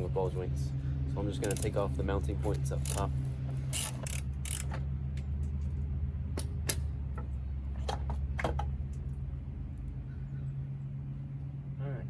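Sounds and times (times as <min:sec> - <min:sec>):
hand tools clicking on bolts: 0:01.4 - 0:04.8.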